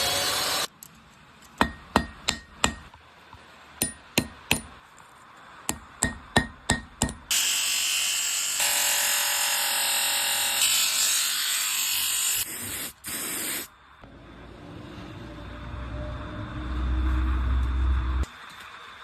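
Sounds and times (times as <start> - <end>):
low rumble: 14.0 - 18.3.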